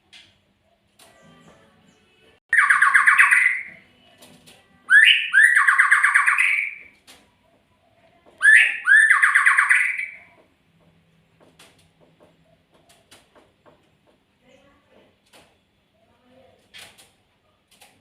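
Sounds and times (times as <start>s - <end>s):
songbird trilling: 2.5s - 3.8s, 4.9s - 6.9s, 8.4s - 10.3s
bird rising whistles: 4.9s - 6.8s, 8.4s - 10.2s.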